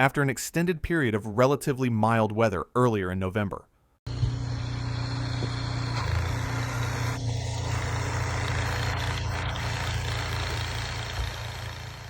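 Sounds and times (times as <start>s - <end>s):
outdoor noise: 4.1s - 12.0s
vehicle engine humming: 4.1s - 12.0s.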